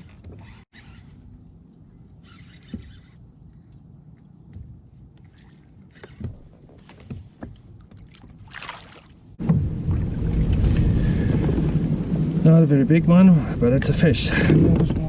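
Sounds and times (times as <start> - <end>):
knocks and handling on a kayak: 2.6 - 8.3, 9.4 - 12.0, 14.3 - 15.0
low background rumble: 9.2 - 15.0.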